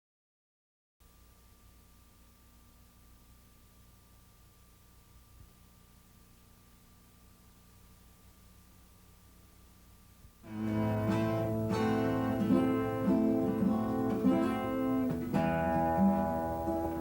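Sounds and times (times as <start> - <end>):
instrumental guitar music: 10.4 - 17.0.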